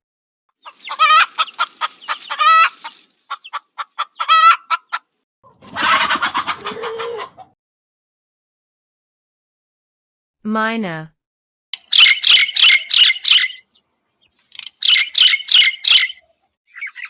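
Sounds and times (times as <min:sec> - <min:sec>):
hen squawk: 0:00.6 - 0:05.0
hen clucking and cackling: 0:00.6 - 0:07.6.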